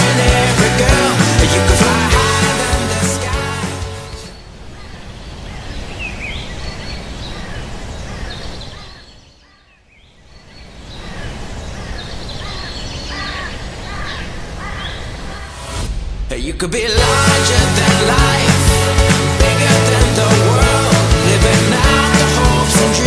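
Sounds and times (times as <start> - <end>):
birds chirping: 3.2 - 15.5.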